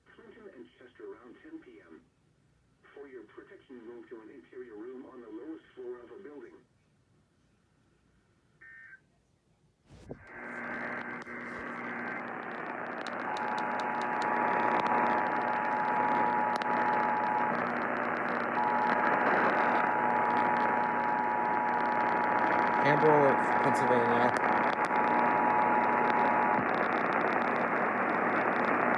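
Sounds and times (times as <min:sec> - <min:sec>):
radio static hiss: 0:09.9 - 0:28.9
click: 0:10.1 - 0:14.9.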